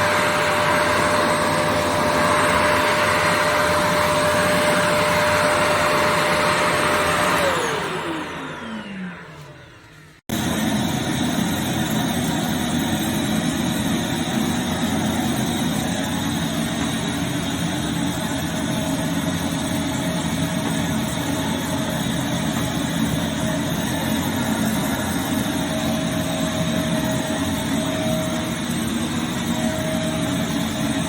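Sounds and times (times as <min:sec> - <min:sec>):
vacuum cleaner motor running: 0:00.0 - 0:31.0.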